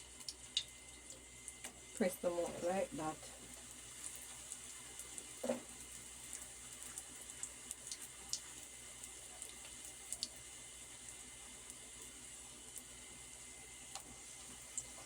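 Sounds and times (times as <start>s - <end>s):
food sizzling in hot oil: 0.0s - 15.0s
oil popping and crackling: 0.2s - 10.5s.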